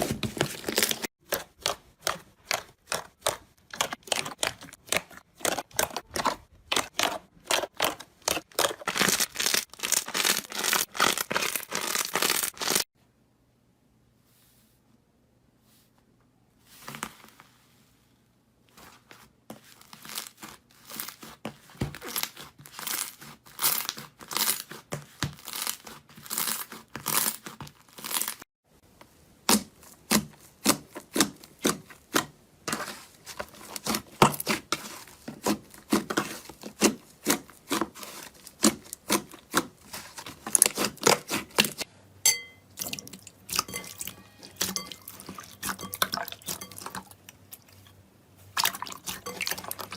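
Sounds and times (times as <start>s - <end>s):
slime squeezed and crackling: 6.7s - 12.8s.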